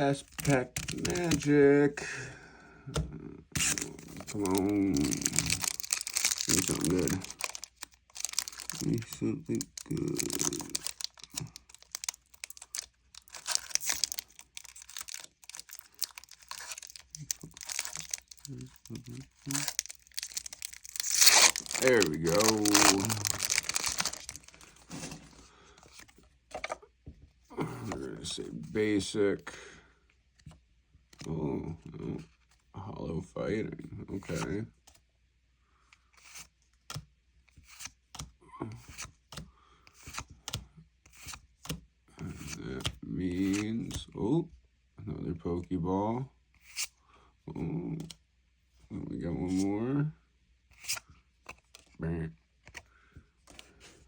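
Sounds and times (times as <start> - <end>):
cards rubbing: 0.2 - 1.5, 3.6 - 26.7, 50.7 - 51.8
foil wrapper crinkling and tearing: 0.3 - 1.4, 3.6 - 25.1.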